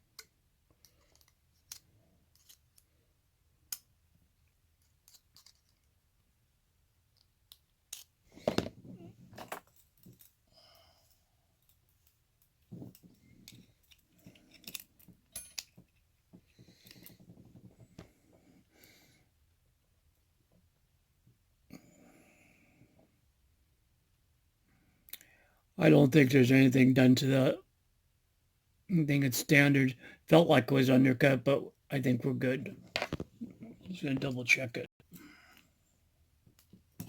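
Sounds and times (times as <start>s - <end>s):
metal padlock parts clinking: 0.8s - 2.9s, 4.8s - 5.9s, 11.6s - 16.1s.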